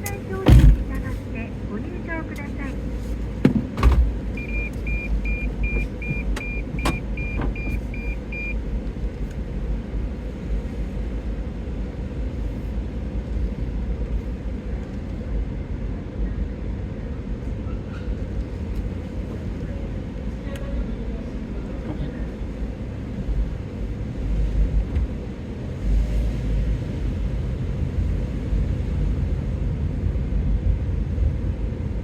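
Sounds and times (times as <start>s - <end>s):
car rumble from inside cabin: 0.0s - 32.0s
short electronic beeps: 4.4s - 8.6s.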